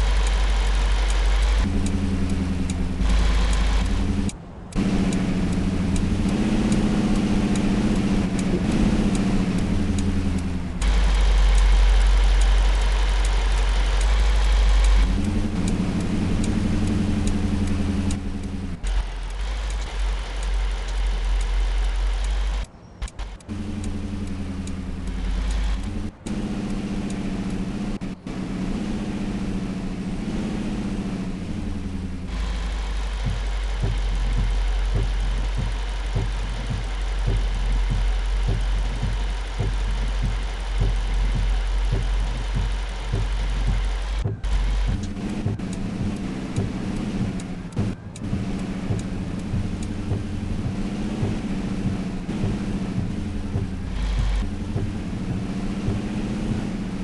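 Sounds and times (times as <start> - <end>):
pickup truck engine hum: 0.0 - 57.0
road and tyre hiss: 0.0 - 57.0
low thumps from road: 33.2 - 56.8.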